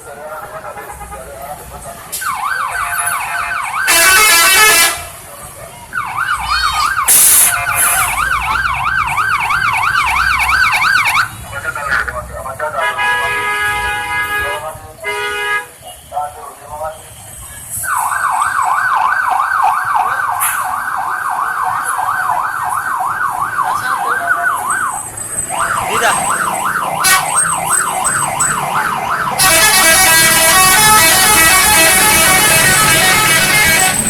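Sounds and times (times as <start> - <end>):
bus horn warbling: 3.9 - 5.1, 12.8 - 15.9, 27.0 - 27.4, 29.4 - 34.0
horn notes played together: 29.4 - 34.0.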